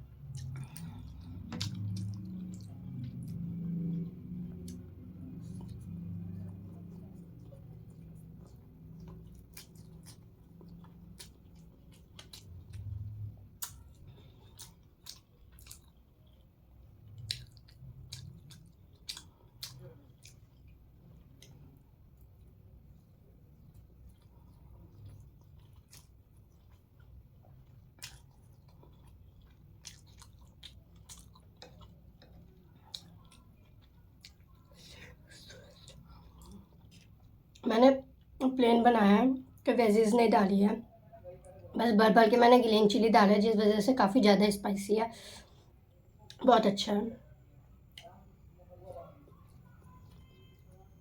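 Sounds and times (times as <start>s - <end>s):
person chewing noodles: 0.0s - 38.4s
faint low hum: 0.0s - 51.0s.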